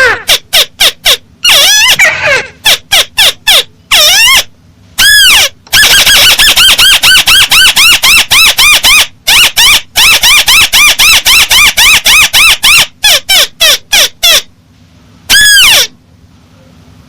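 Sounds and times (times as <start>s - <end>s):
bird squealing calls: 0.0s - 14.5s, 15.3s - 16.0s.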